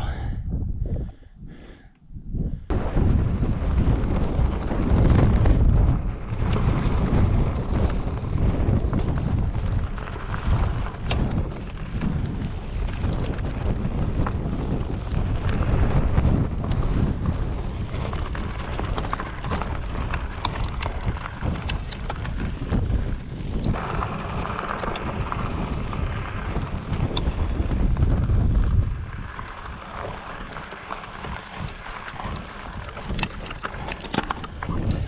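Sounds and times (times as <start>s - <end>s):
wind buffeting microphone: 0.0s - 35.0s
bike tyres rolling over gravel: 2.7s - 35.0s.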